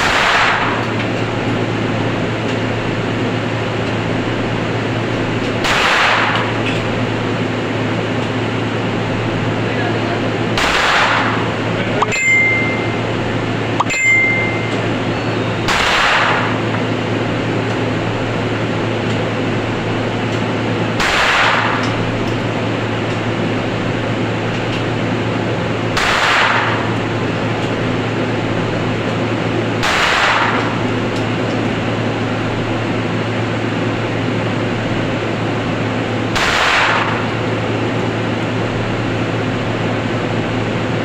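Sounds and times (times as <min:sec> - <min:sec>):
gunshots with echo: 0:00.0 - 0:00.8, 0:05.6 - 0:06.6, 0:10.5 - 0:11.5, 0:15.6 - 0:16.6, 0:21.0 - 0:21.8, 0:26.0 - 0:26.9, 0:29.8 - 0:30.8, 0:36.3 - 0:37.3
steady hum: 0:00.0 - 0:41.0
sharp clicks with high ring: 0:12.0 - 0:13.2, 0:13.8 - 0:15.8.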